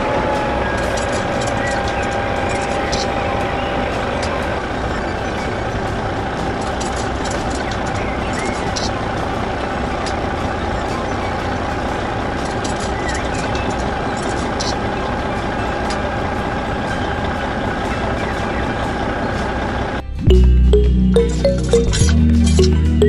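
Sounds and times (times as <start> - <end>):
music with heavy bass: 20.1 - 23.0.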